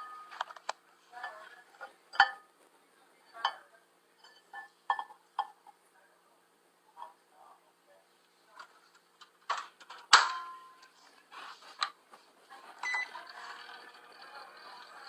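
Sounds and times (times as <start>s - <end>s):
microwave humming: 12.5s - 15.0s
keypad beep: 12.8s - 13.2s.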